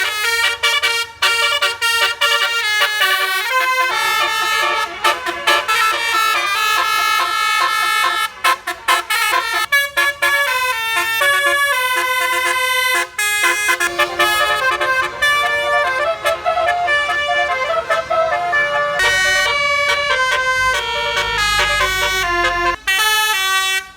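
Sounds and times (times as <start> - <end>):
multi-note bus air horn tune: 0.0 - 23.9
low rumble: 13.9 - 17.7.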